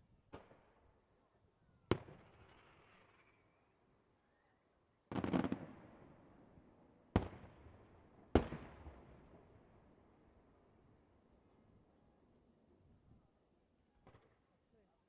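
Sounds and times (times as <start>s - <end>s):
fireworks bangs with echo: 5.1s - 5.9s.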